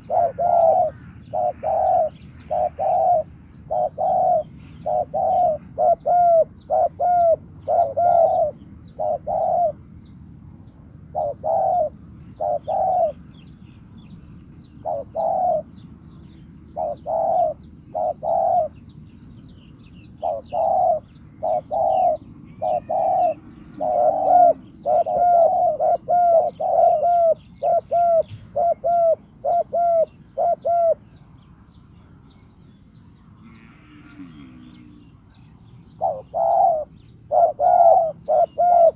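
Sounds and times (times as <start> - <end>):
dove cooing: 0.0 - 9.8, 11.1 - 13.2, 14.8 - 15.8, 16.7 - 18.9, 20.1 - 31.2, 33.4 - 35.3, 35.9 - 38.9.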